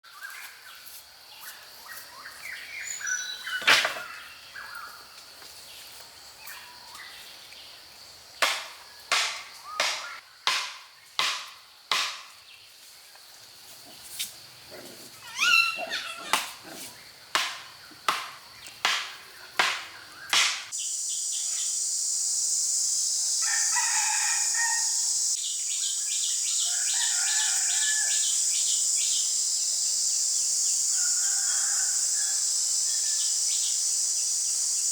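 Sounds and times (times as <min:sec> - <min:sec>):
sharp knocks: 0:08.4 - 0:12.3, 0:17.3 - 0:20.7
high-pitched insect drone: 0:20.8 - 0:25.4.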